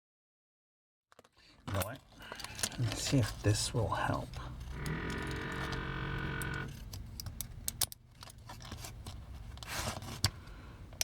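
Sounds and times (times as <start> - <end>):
steady hum: 4.4 - 7.0.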